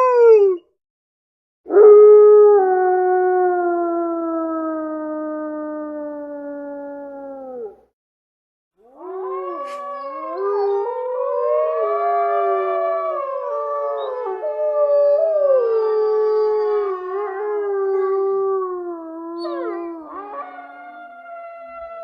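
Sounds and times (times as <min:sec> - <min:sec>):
wolves howling in chorus: 0:08.9 - 0:22.0.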